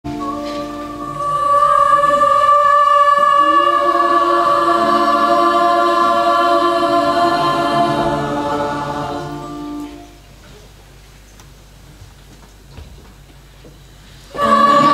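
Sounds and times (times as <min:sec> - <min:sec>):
choir singing held chord: 0:00.1 - 0:10.2, 0:14.3 - 0:14.9.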